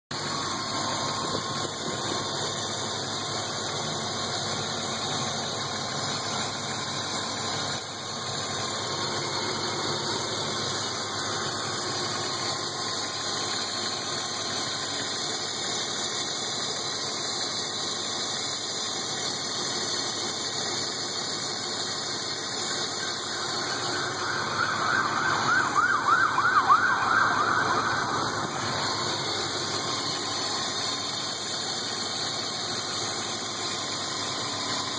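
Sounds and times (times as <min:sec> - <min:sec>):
car engine idling: 0:00.1 - 0:34.9
warbling siren-like sound: 0:22.8 - 0:30.7.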